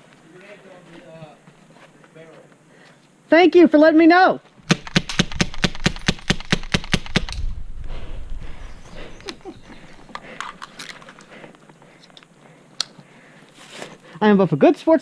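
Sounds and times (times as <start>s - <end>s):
airsoft rifle rapid firing: 4.7s - 7.3s
sharp clicks: 4.7s - 7.5s.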